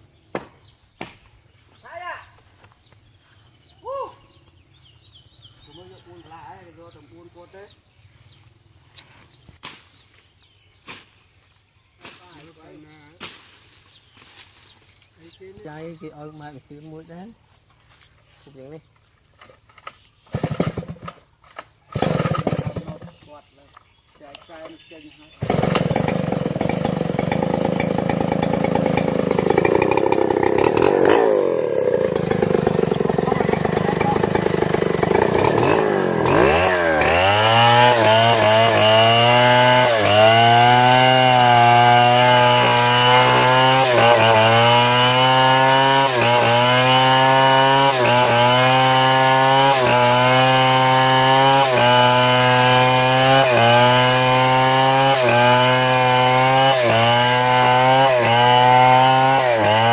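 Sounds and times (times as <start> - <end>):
chainsaw cutting wood: 19.4 - 23.4, 24.7 - 59.9.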